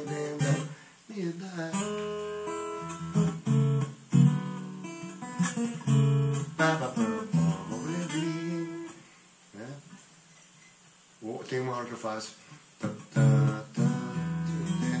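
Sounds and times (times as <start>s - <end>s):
acoustic guitar playing: 0.0s - 9.2s, 12.8s - 15.0s.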